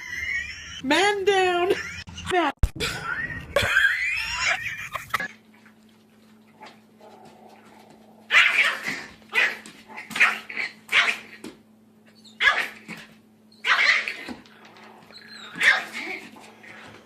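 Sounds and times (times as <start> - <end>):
low steady hum: 0.0 - 17.0
dog barking: 8.3 - 9.6, 10.2 - 11.4, 12.4 - 12.9, 13.6 - 14.2, 15.5 - 16.1.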